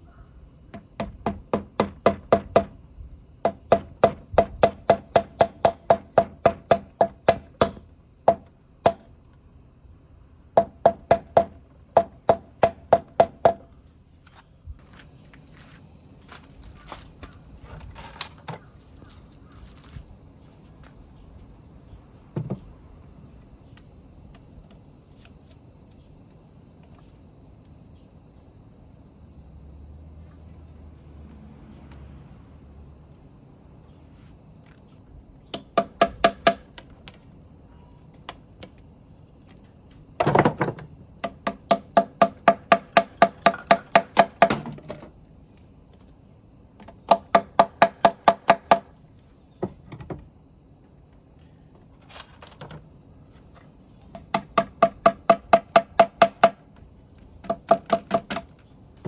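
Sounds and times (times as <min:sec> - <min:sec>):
high insect buzz: 0:00.0 - 0:43.0
hollow wooden knocks: 0:00.7 - 0:02.8, 0:03.4 - 0:09.1, 0:10.6 - 0:13.6, 0:22.4 - 0:22.7, 0:40.2 - 0:45.1, 0:46.8 - 0:48.9, 0:49.6 - 0:50.3, 0:54.1 - 0:58.7.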